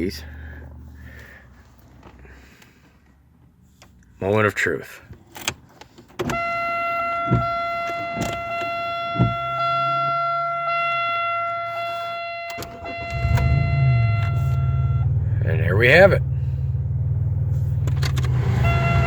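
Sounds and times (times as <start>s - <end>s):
car engine starting and running: 0.0s - 19.0s
electronic warning tone: 6.4s - 15.2s, 18.6s - 19.0s.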